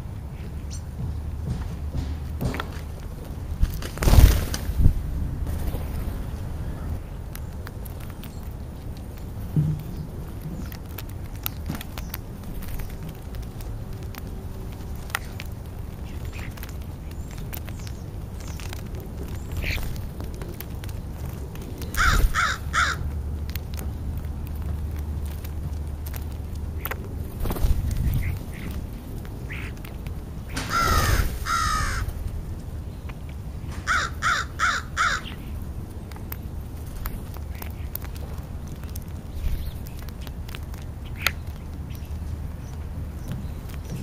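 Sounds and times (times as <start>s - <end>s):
low outdoor rumble: 0.0s - 44.0s
bird clicks: 7.3s - 32.2s, 33.0s - 44.0s
crow cawing: 22.0s - 23.0s, 30.7s - 32.1s, 33.8s - 35.4s.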